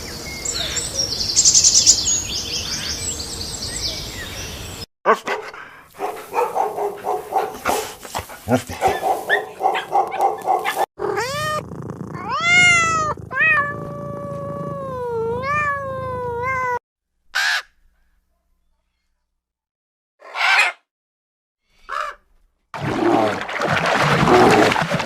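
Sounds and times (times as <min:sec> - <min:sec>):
cat meowing: 0:11.0 - 0:11.6, 0:12.2 - 0:16.8.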